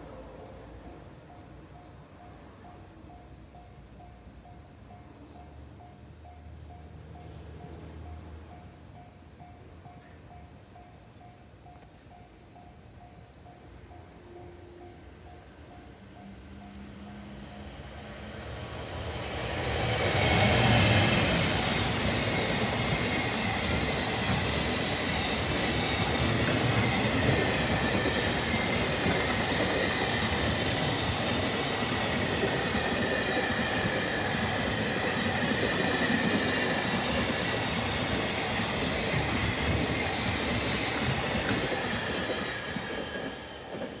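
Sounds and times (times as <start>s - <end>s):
freight train rumbling past: 13.1s - 44.0s.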